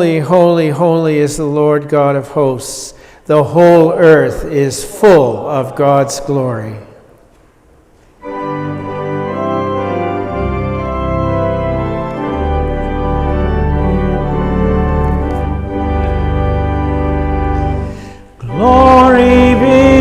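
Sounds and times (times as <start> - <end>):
organ playing hymn chords: 8.0 - 20.0.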